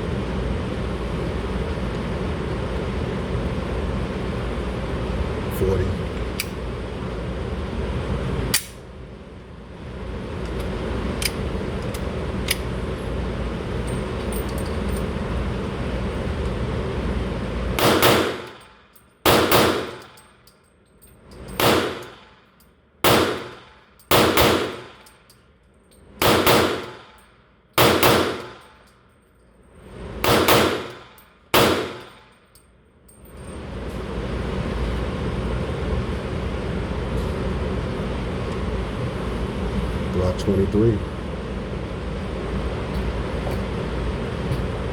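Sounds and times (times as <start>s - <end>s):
steady background noise: 0.0s - 44.9s
pistol shots: 17.8s - 18.6s, 19.2s - 20.1s, 21.6s - 22.1s, 23.0s - 25.0s, 26.2s - 27.1s, 27.8s - 28.6s, 30.2s - 32.1s.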